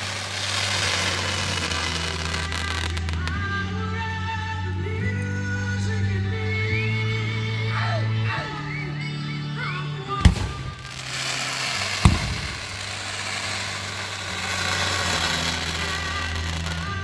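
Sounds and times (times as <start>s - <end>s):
fireworks bangs: 0.0s - 3.4s, 10.2s - 17.0s
fireworks crackling: 0.0s - 4.6s, 10.2s - 17.0s
music playing: 0.0s - 17.0s.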